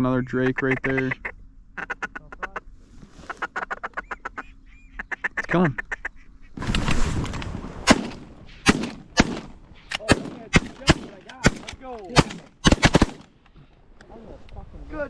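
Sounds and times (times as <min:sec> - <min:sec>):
shotgun blasts: 0:07.8 - 0:13.3.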